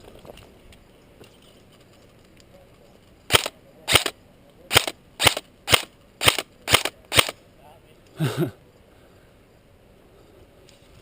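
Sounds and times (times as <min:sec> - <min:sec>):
airsoft gun shots: 0:03.3 - 0:04.1, 0:04.7 - 0:07.4.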